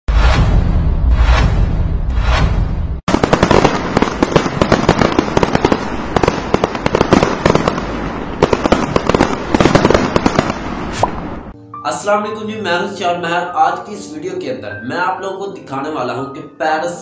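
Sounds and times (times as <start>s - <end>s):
low rumble: 0.1s - 3.1s
whooshing effect: 0.1s - 3.1s
fireworks crackling and banging: 3.1s - 11.5s.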